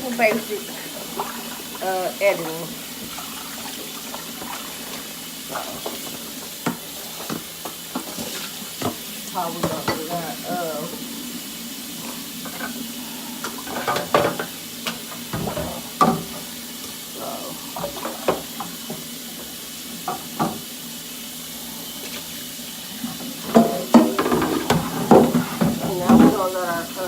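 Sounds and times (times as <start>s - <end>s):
tap running into sink: 3.0s - 10.2s, 13.4s - 17.0s, 17.8s - 20.7s, 23.0s - 26.5s
dishes and pots clinking: 4.3s - 10.3s, 13.4s - 16.5s, 23.4s - 26.6s.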